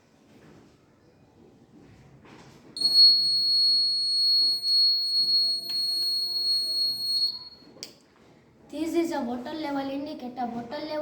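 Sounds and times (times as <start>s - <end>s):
fire alarm buzzer tone: 2.8s - 7.6s.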